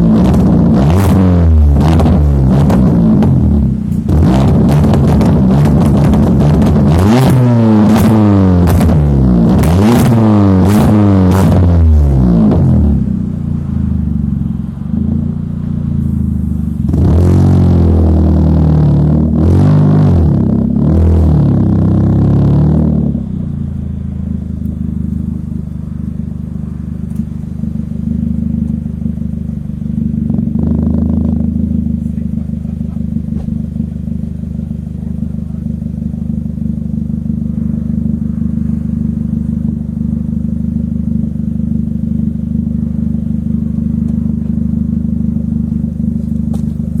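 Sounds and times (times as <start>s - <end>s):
car engine idling: 0.0s - 19.6s, 20.2s - 47.0s
engine throttle blip: 23.1s - 47.0s.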